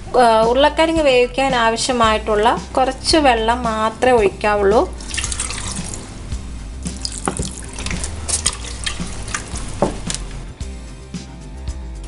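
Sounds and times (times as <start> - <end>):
water pouring and splashing: 4.9 - 10.4.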